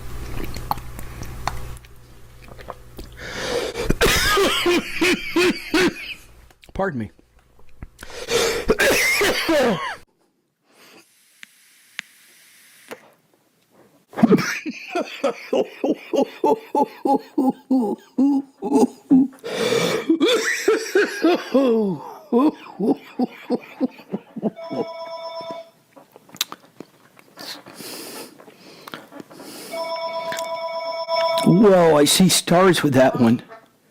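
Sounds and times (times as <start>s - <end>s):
man coughing: 3.8s - 6.1s, 8.7s - 10.0s, 20.0s - 23.9s.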